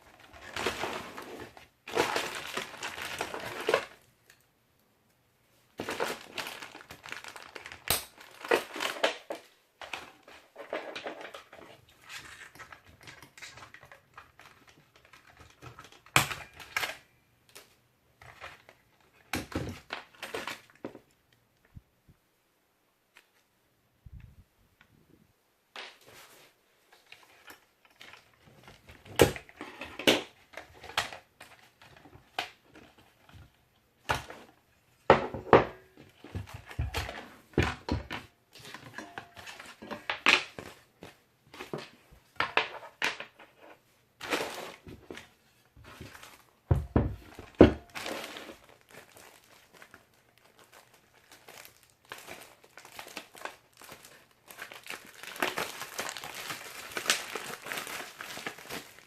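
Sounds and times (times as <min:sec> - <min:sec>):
crinkling wrap: 0:00.0 - 0:04.4, 0:05.8 - 0:21.2, 0:26.0 - 0:34.7, 0:36.0 - 0:59.0.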